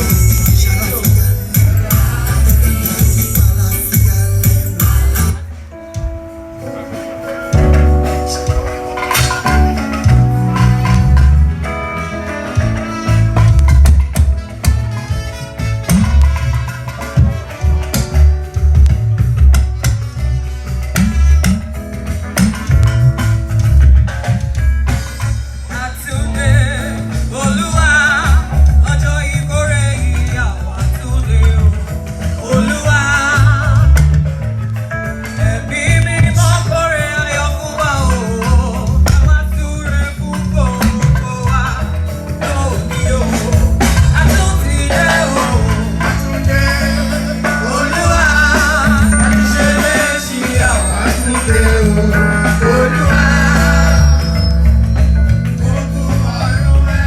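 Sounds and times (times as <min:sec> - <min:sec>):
people singing: 0:00.0 - 0:05.5, 0:35.4 - 0:54.8, 0:55.4 - 0:57.0
bass and drum beat: 0:00.0 - 0:57.0
church band playing a hymn: 0:00.0 - 0:57.0.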